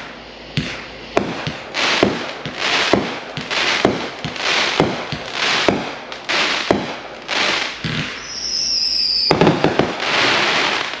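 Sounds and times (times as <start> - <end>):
crackling hiss: 0.0 - 11.0
firework bangs: 0.0 - 11.0
high falling firework whistle: 6.6 - 11.0.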